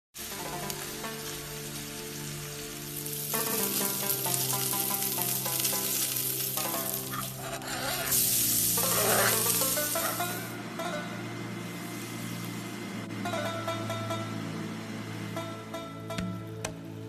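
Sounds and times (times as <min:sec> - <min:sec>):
food sizzling in a pan: 0:00.2 - 0:10.5
background music: 0:00.2 - 0:17.0.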